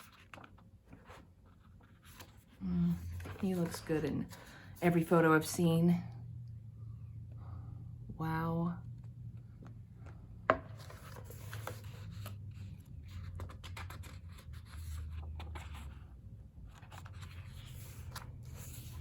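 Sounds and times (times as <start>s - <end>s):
paper pages rustling: 0.0s - 4.5s, 9.6s - 19.0s.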